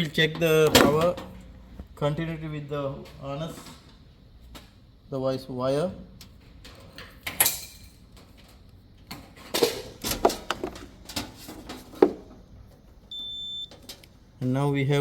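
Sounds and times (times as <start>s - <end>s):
multimeter high beep: 13.1s - 13.7s.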